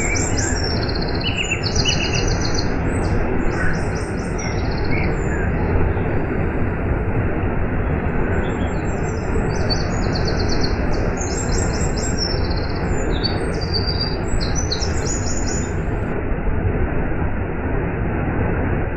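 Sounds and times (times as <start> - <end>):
small bird chirping and trilling: 0.0 - 6.3, 7.8 - 16.0.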